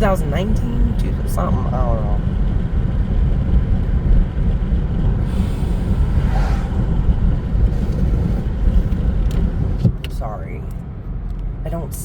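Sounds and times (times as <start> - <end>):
car cabin road rumble: 0.0 - 12.0
brief hiss: 5.3 - 7.2.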